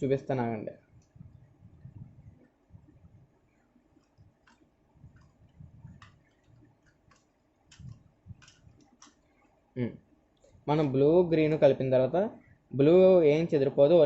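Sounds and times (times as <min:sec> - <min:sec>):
puzzle cube plastic clicks: 0:04.0 - 0:09.2.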